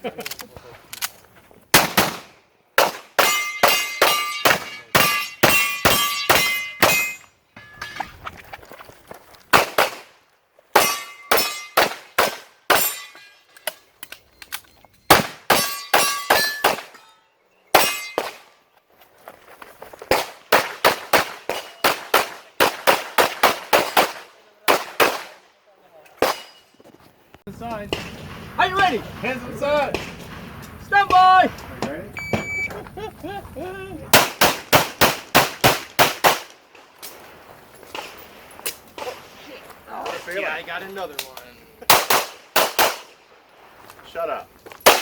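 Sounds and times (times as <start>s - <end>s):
pistol shots: 1.7s - 7.2s, 9.5s - 10.2s, 10.8s - 13.0s, 15.1s - 17.0s, 20.1s - 25.4s, 34.1s - 36.6s, 41.9s - 43.2s
bullets clanging on steel targets: 2.9s - 8.2s, 10.8s - 18.5s, 21.5s - 22.0s, 26.2s - 26.8s.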